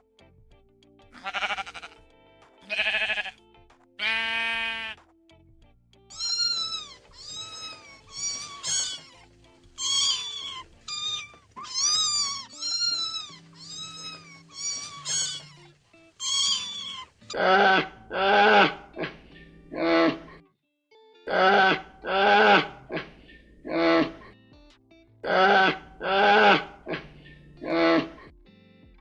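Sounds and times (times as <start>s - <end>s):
cat meowing: 1.2s - 2.0s, 6.1s - 18.8s.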